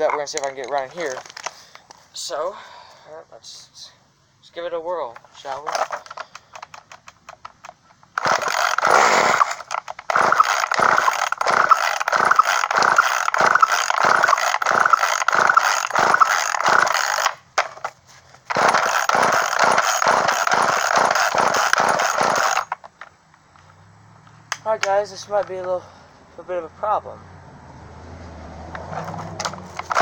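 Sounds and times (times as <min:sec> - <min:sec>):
chainsaw recoil starter pulled: 0:00.0 - 0:01.7, 0:05.2 - 0:23.1, 0:28.8 - 0:30.0.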